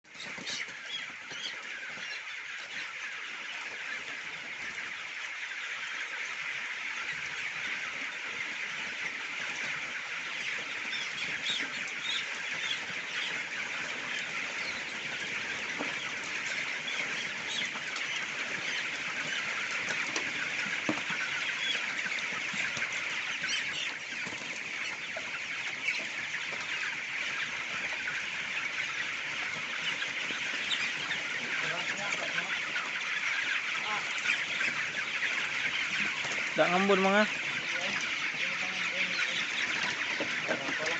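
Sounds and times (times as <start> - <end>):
flock of chickens chattering: 0.0 - 40.9.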